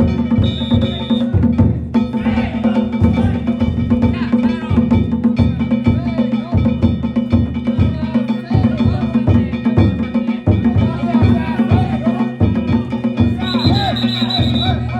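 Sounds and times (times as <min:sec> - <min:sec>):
taiko drum beating: 0:00.0 - 0:14.9.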